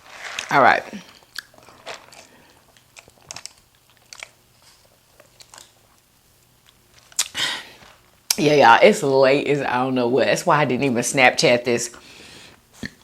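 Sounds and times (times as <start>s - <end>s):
person chewing food: 0.1s - 8.4s
wet mouth clicks: 1.3s - 1.6s, 12.8s - 13.0s.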